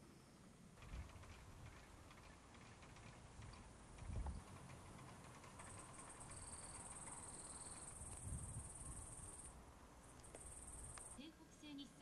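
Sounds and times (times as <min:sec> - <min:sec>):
high-pitched insect trill: 0:06.3 - 0:09.5, 0:10.3 - 0:11.2.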